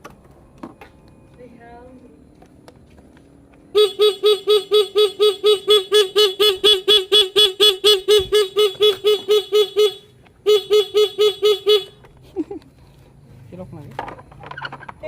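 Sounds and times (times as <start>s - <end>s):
motorcycle horn beeping rapidly: 3.7s - 12.1s.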